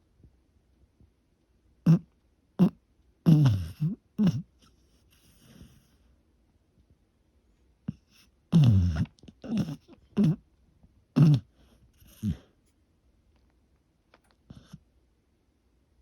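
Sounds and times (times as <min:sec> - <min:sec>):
dog snoring: 0:01.8 - 0:04.5, 0:05.1 - 0:05.9, 0:07.9 - 0:10.4, 0:11.2 - 0:12.5, 0:14.5 - 0:14.8.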